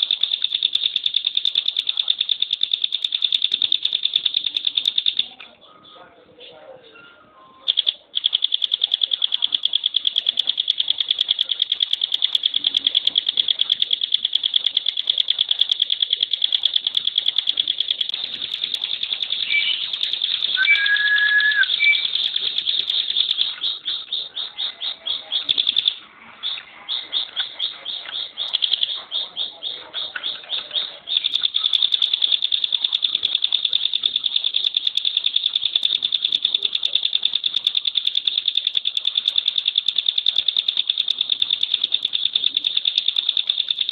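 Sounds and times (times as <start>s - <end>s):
songbird rattling trill: 0.0s - 5.4s, 7.7s - 43.9s
bird low whistle: 19.5s - 19.8s, 20.6s - 22.2s.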